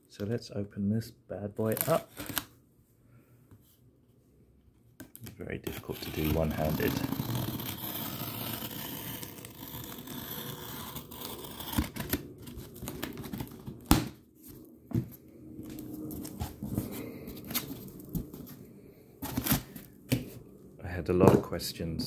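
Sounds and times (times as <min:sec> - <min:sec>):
cardboard box tearing: 0:05.7 - 0:14.1, 0:19.2 - 0:19.9
box rustling: 0:19.2 - 0:20.3.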